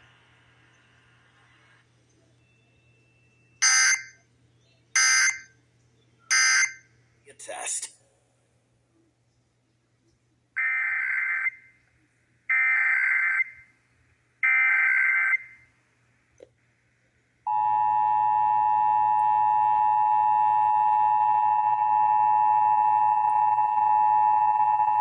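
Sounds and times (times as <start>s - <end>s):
two-tone attention signal: 3.6s - 4.2s, 5.0s - 5.5s, 6.3s - 6.8s.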